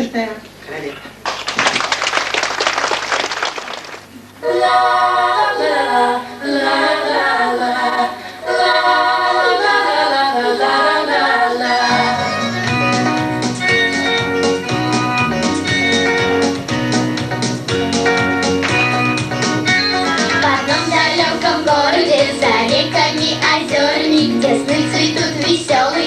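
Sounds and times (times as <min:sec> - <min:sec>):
audience applause: 0:01.2 - 0:04.2
group singing: 0:04.4 - 0:12.7, 0:20.2 - 0:26.0
instrumental accompaniment with bass: 0:11.7 - 0:26.0.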